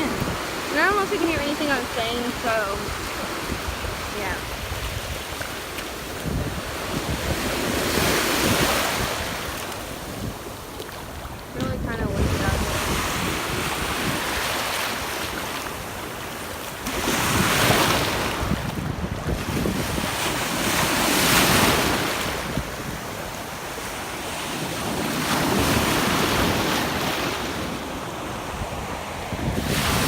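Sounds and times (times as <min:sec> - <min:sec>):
wind buffeting microphone: 0:00.0 - 0:16.2, 0:16.8 - 0:23.6, 0:24.4 - 0:30.0
ocean surf breaking: 0:00.0 - 0:30.0.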